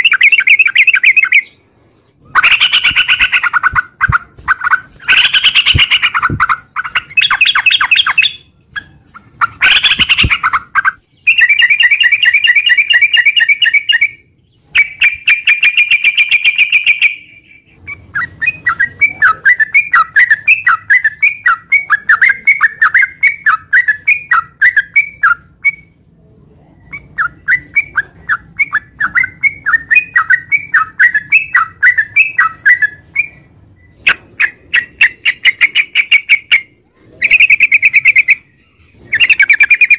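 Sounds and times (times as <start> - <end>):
bulbul singing chattering notes: 2.2 - 8.6, 9.2 - 26.0.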